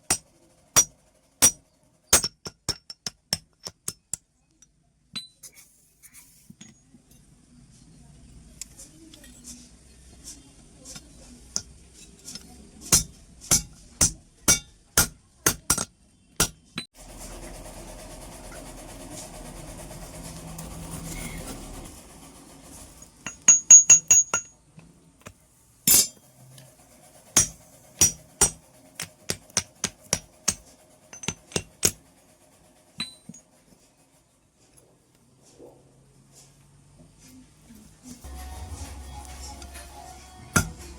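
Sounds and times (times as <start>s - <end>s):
steady mechanical noise: 16.4s - 24.6s, 25.2s - 34.5s, 38.2s - 40.9s.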